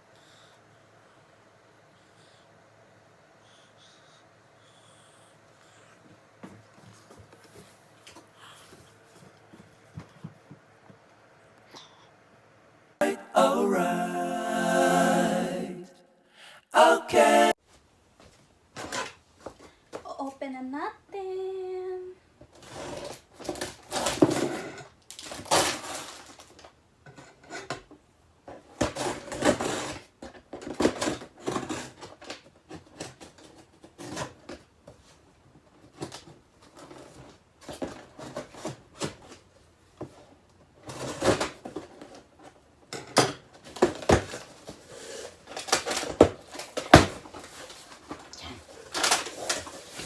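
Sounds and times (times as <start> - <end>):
rustling and scraping: 43.6 - 50.0.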